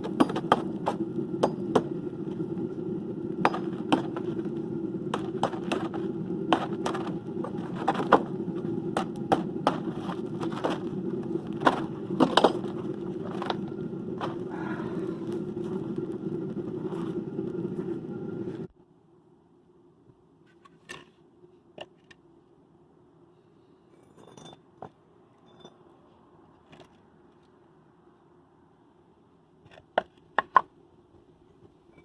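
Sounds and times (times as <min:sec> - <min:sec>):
steady machine hum: 0:00.0 - 0:18.8.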